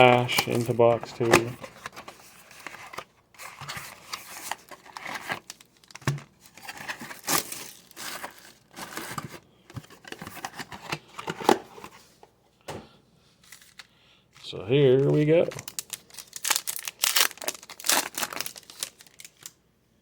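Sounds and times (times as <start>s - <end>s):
plastic wrap crinkling and tearing: 0.0s - 9.3s, 15.0s - 19.6s.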